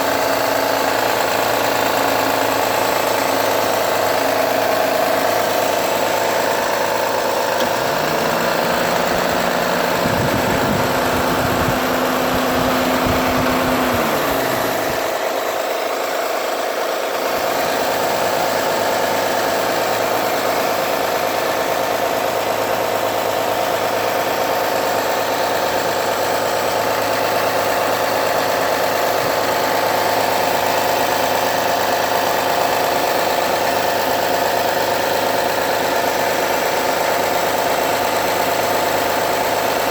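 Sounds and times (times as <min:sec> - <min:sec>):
car engine idling: 0:00.0 - 0:39.9
engine ticking noise: 0:00.0 - 0:39.9.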